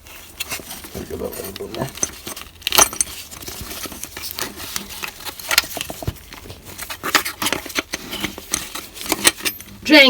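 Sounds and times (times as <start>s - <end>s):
wiring harness rustling: 0.0s - 10.0s.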